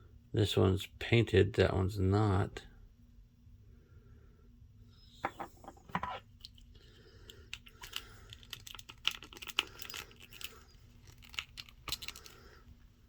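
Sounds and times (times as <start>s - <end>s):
plastic pieces clicking and tapping: 7.3s - 12.4s.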